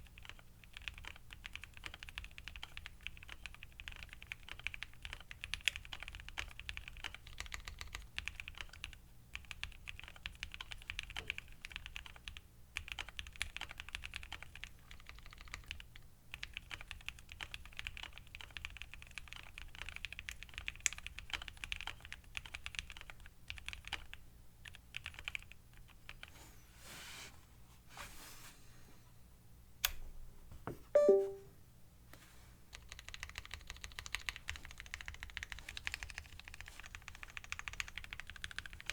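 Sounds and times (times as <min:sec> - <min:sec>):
soft mechanical keyboard typing: 0:00.0 - 0:26.3, 0:31.0 - 0:31.4, 0:32.7 - 0:38.9
short pitched sound: 0:31.0 - 0:31.5.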